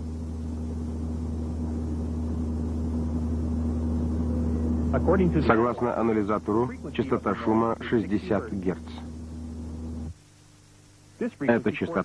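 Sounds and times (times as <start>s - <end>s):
car cabin booming drone: 0.0s - 7.6s
steady higher hum: 0.0s - 12.0s.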